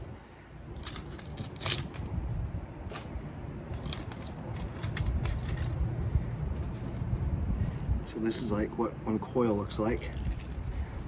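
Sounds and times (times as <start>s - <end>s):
wire clicking and crackling: 3.7s - 5.9s.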